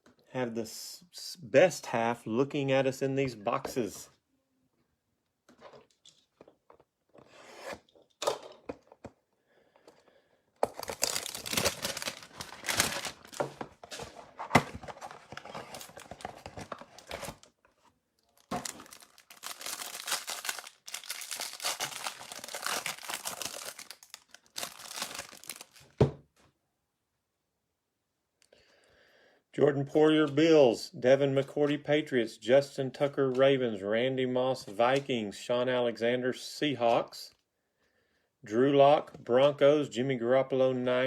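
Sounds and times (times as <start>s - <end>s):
cardboard tearing and crinkling: 10.7s - 17.5s, 18.4s - 26.0s.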